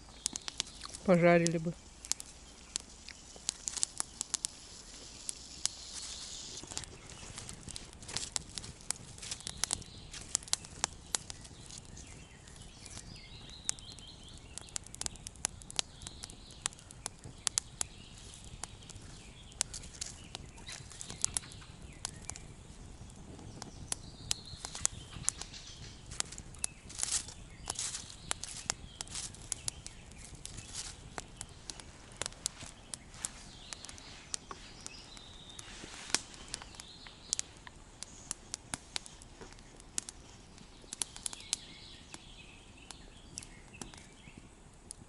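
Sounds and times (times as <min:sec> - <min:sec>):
campfire crackling and popping: 0:00.0 - 0:45.0.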